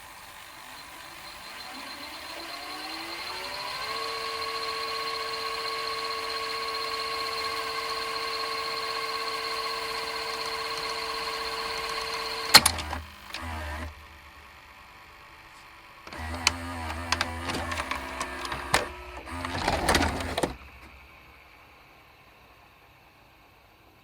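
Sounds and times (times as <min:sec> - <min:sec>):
tape fast-winding whine: 0:00.0 - 0:14.8, 0:16.1 - 0:22.2
mechanism whirring and knocking: 0:06.2 - 0:14.4, 0:16.0 - 0:21.5
tape transport stopping clunk: 0:09.8 - 0:14.1, 0:16.1 - 0:21.1.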